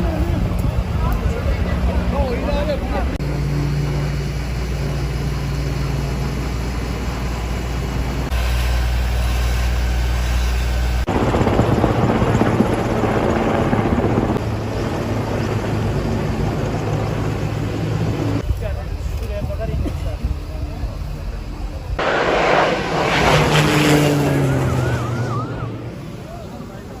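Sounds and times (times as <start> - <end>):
helicopter engine and rotor: 0.0 - 22.0.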